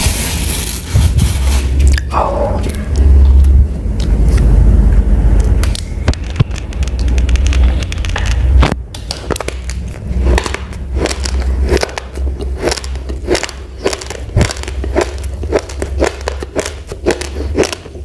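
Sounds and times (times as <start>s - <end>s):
low rumble: 0.9s - 17.2s
rice grains crunching: 9.1s - 18.0s.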